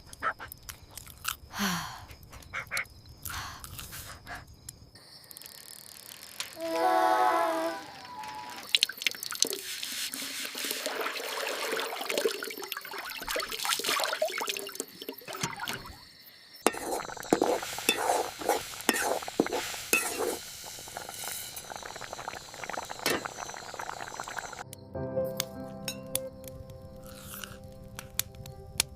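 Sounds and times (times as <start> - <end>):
liquid pouring: 8.6 - 16.0, 16.7 - 24.6
liquid dripping: 16.7 - 24.6.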